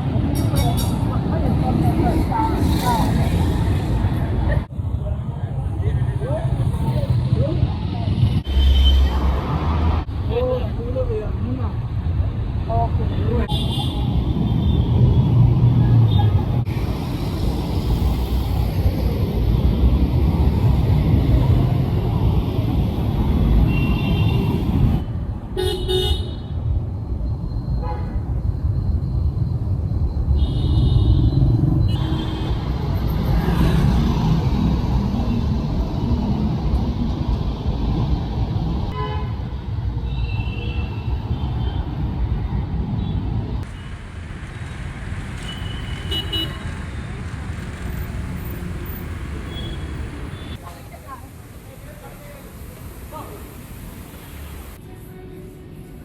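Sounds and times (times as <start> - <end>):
traffic engines rumbling: 0.0 - 56.0
vehicle horns honking: 45.4 - 46.8.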